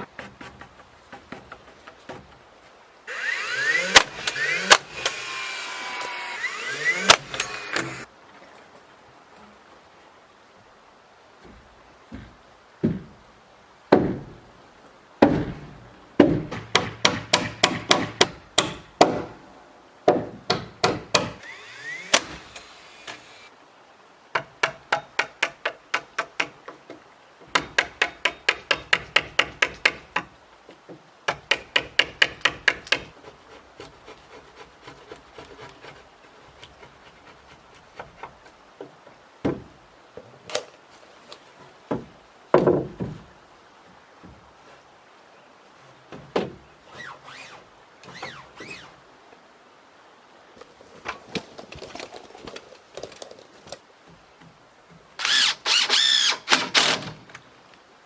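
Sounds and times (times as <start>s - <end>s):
hammer driving nails into wood: 3.1s - 8.0s, 16.2s - 19.4s, 20.1s - 23.5s, 31.3s - 33.1s.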